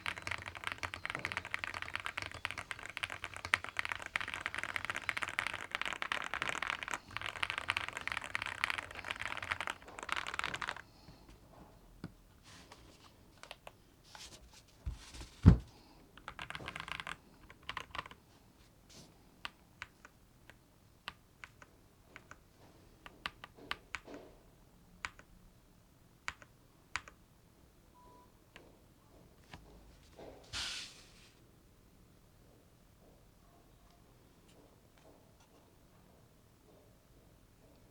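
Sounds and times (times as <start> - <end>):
mechanical keyboard typing: 0.0 - 10.9, 16.2 - 18.2.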